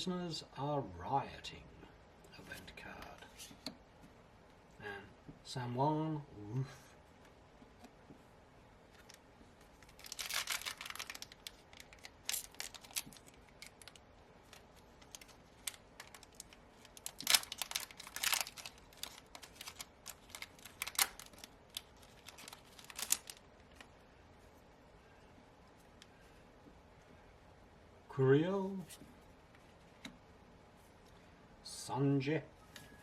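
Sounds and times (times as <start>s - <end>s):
foil wrapper tearing and crinkling: 9.8s - 23.9s.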